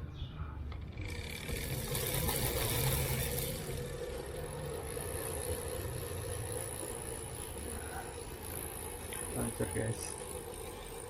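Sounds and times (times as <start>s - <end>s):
bicycle freehub ratcheting: 0.7s - 11.0s.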